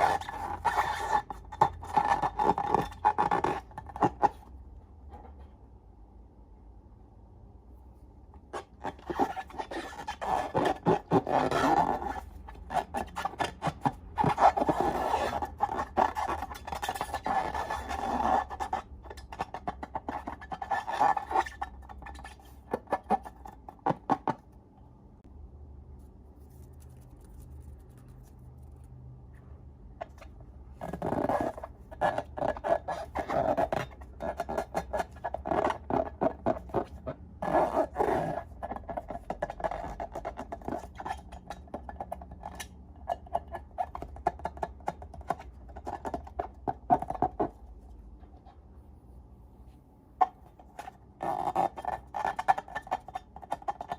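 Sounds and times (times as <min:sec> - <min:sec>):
slime scraping: 0:00.0 - 0:04.5, 0:08.4 - 0:24.3, 0:30.0 - 0:48.6, 0:50.2 - 0:53.9.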